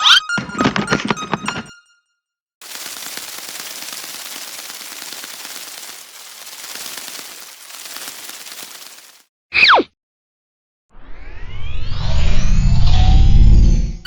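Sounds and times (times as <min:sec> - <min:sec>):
dense crackling noise: 0:02.6 - 0:09.2.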